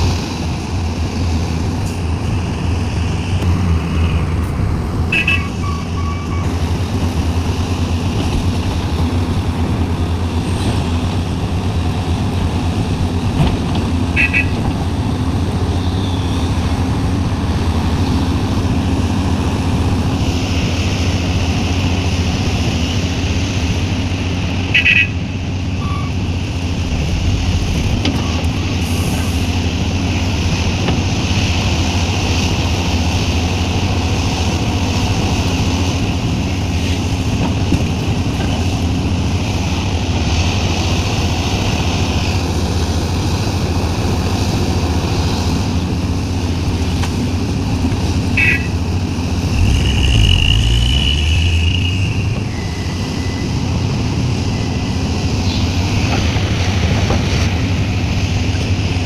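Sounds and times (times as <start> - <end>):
excavator diesel engine running: 0.0 - 59.0
high hydraulic whine: 25.8 - 31.0, 48.3 - 58.9.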